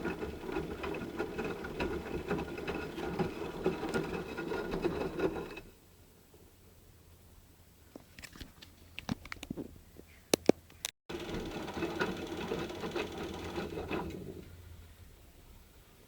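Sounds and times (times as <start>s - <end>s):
fine rapid rattle: 0.0s - 5.7s, 11.1s - 14.6s
washing machine churning: 0.0s - 5.7s, 11.1s - 14.6s.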